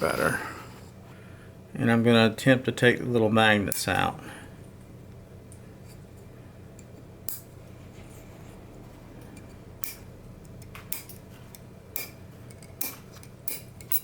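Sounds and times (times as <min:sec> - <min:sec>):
magnets clicking against metal: 0:09.8 - 0:14.0.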